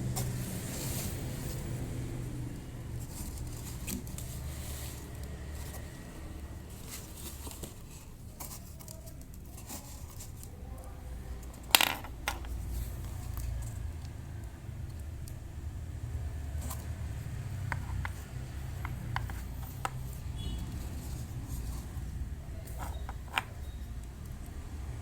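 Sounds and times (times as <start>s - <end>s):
small hard objects clicking: 11.4s - 14.1s.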